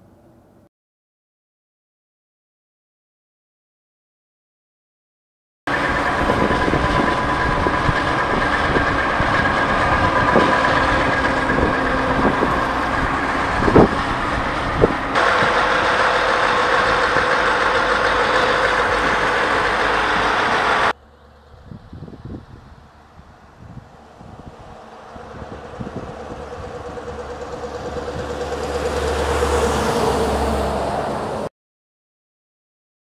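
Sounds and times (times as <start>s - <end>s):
truck engine running: 5.7s - 31.4s.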